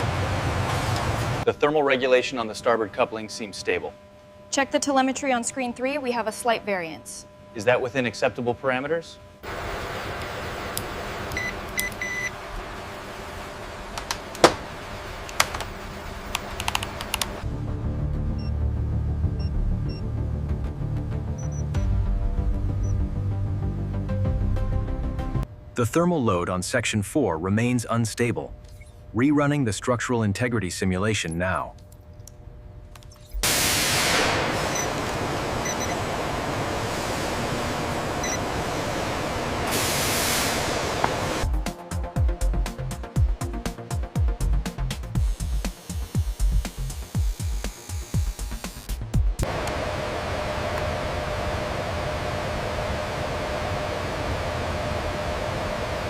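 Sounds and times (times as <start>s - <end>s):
steady low hum: 0.0s - 56.0s
sharp clicks: 16.3s - 17.4s
loud rushing hiss: 33.4s - 41.5s, 45.1s - 56.0s.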